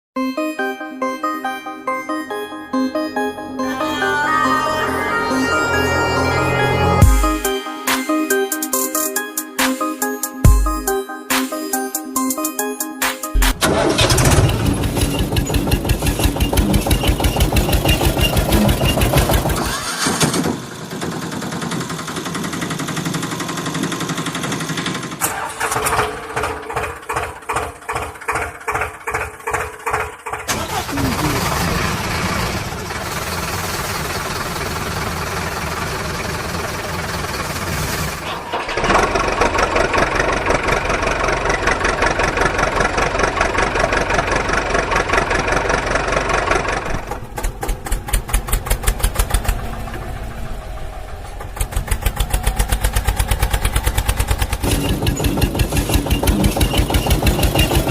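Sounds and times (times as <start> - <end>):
vehicle engine chugging: 13.4 - 57.9.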